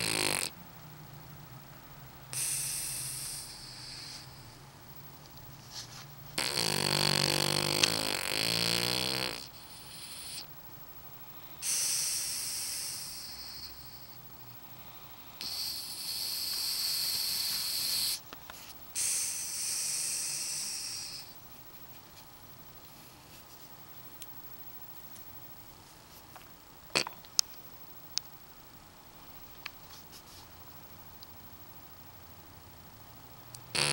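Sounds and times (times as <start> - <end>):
dog snoring: 0.0 - 0.6, 2.3 - 4.4, 6.4 - 10.5, 11.4 - 18.2, 19.0 - 21.4.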